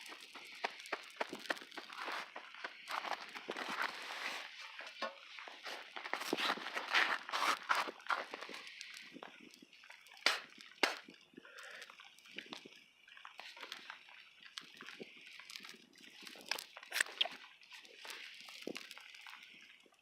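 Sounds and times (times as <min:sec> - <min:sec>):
sharp taps and knocks: 0:10.3 - 0:11.0.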